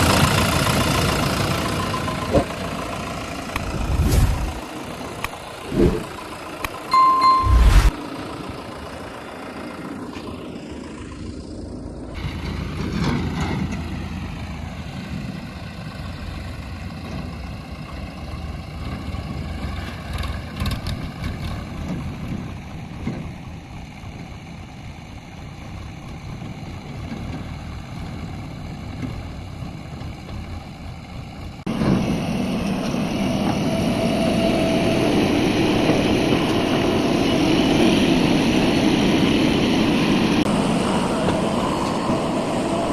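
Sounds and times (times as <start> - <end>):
diesel engine revving: 0.0 - 6.8, 31.6 - 42.9.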